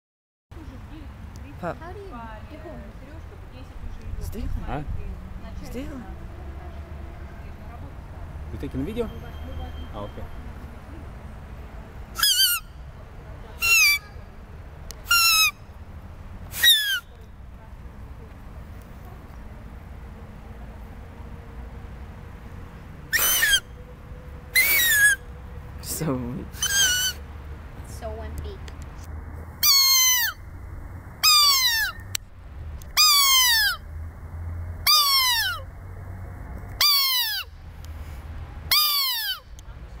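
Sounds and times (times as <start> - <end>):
shrill squeals from bark reed: 12.2 - 12.7, 13.6 - 14.1, 16.5 - 17.1, 23.1 - 23.7, 24.5 - 25.2, 26.6 - 27.2, 29.6 - 30.4, 31.2 - 32.1, 33.0 - 33.8, 34.8 - 35.6, 36.8 - 37.5, 38.7 - 39.4.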